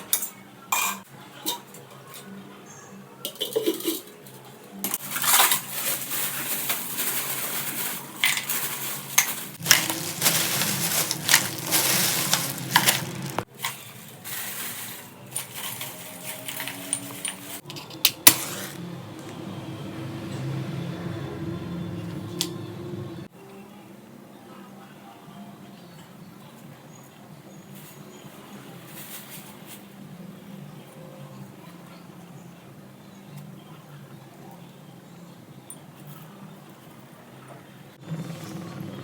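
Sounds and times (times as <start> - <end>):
metal cookware clinking and scraping: 0.0 - 2.3, 3.2 - 18.8.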